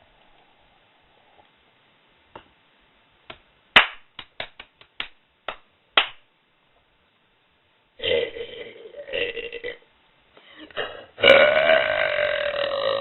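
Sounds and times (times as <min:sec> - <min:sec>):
hand claps and smacks: 0:03.3 - 0:06.3
long burp: 0:08.0 - 0:09.8, 0:10.7 - 0:13.0.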